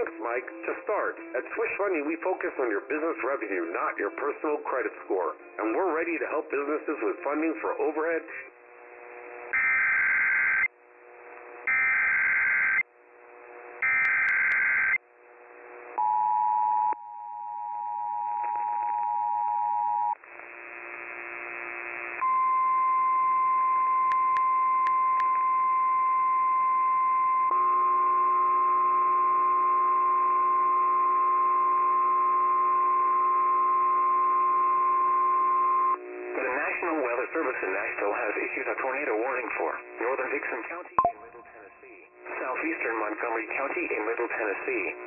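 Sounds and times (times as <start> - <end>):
steady single-pitched alert tone: 41.0 - 41.3
two-tone attention signal: 41.0 - 41.5.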